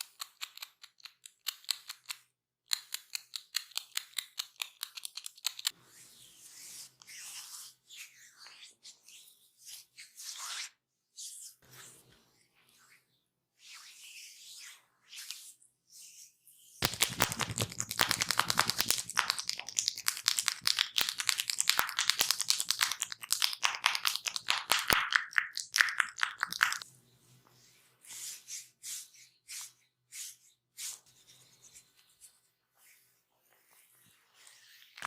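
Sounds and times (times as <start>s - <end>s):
soft scrapes: 5.7s - 16.8s, 27.1s - 35.0s
scratching and rubbing on hair: 5.9s - 11.9s, 13.6s - 26.8s.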